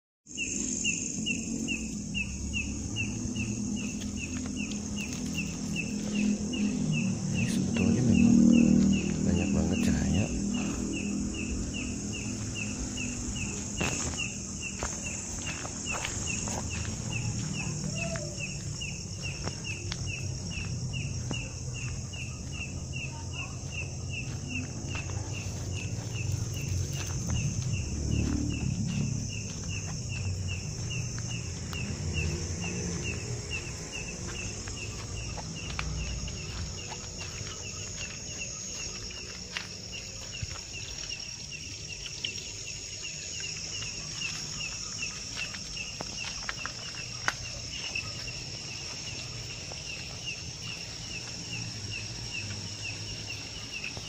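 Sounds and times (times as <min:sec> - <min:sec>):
cricket chirping: 0:00.3 - 0:54.0
high insect drone: 0:00.3 - 0:54.0
low rumble: 0:23.6 - 0:37.2.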